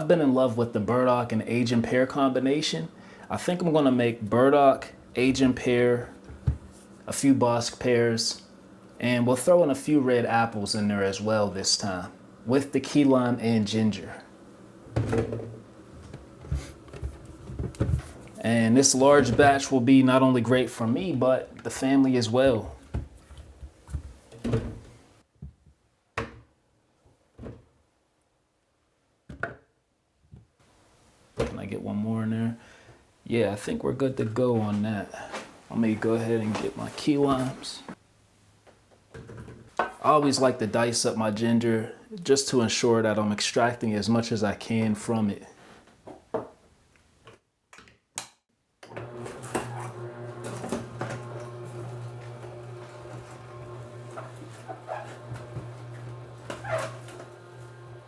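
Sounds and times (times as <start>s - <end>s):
auger crushing produce: 48.9s - 58.0s
fruit knocking into juicer hopper: 48.9s - 58.0s.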